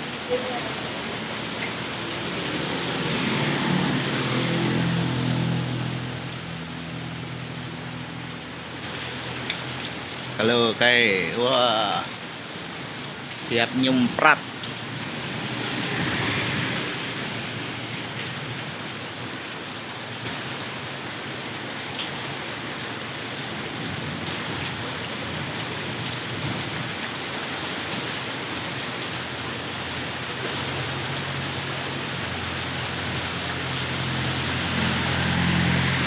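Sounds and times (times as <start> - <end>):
heavy rain pouring on road: 0.0 - 36.0
low engine hum: 29.6 - 36.0.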